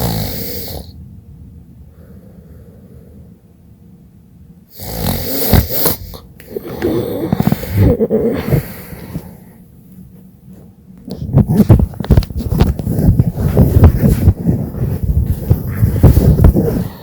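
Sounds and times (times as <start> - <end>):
woman snoring: 0.0 - 1.0, 4.7 - 9.4.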